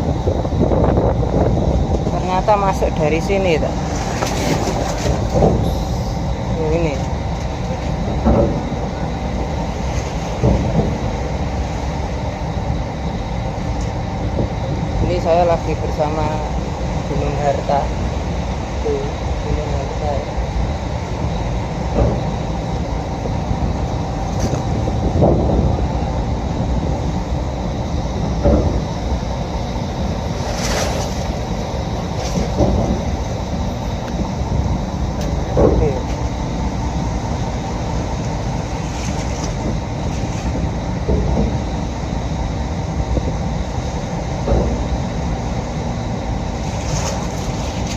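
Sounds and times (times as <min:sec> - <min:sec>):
ferry engine low rumble: 0:00.0 - 0:47.9.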